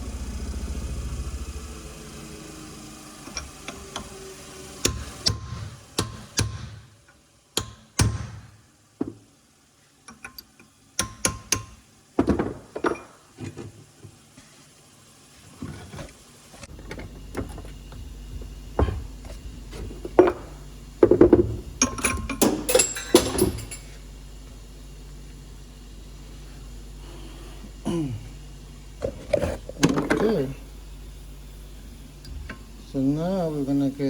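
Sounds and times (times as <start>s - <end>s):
steady low hum: 0.0s - 6.9s, 15.6s - 34.0s.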